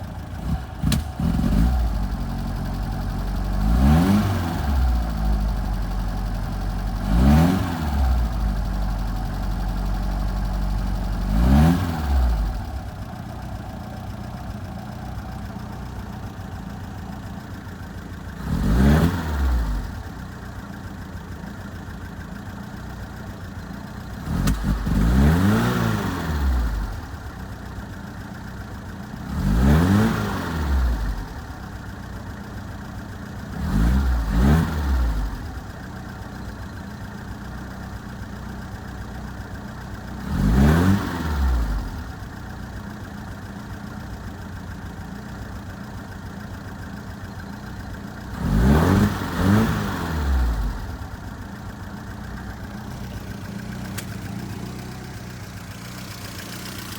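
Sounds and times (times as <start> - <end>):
car engine idling and revving: 0.0 - 56.9.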